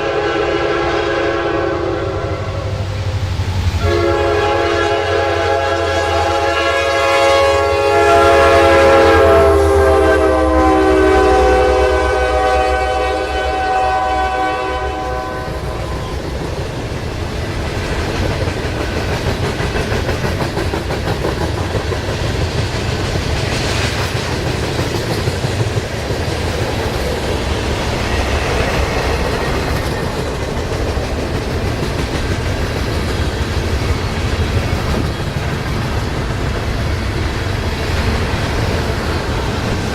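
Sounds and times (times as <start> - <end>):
locomotive air horn: 0.0 - 2.8, 3.8 - 16.1
train wheels clattering on rails: 15.5 - 39.9.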